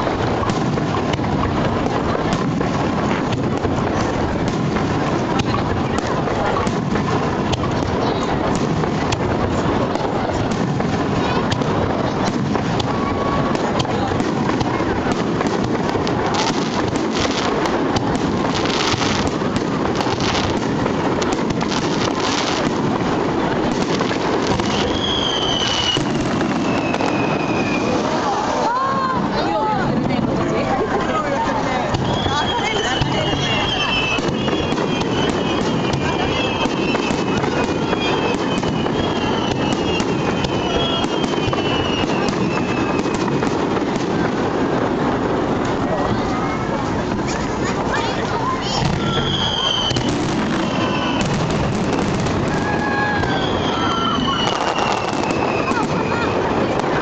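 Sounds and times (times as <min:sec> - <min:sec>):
fireworks crackling and popping: 0:00.0 - 0:57.0.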